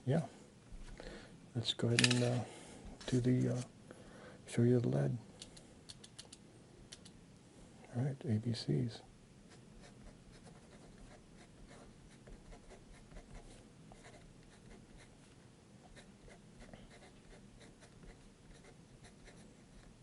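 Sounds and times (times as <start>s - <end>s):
pencil scratching on paper: 9.8s - 15.1s, 15.9s - 19.9s.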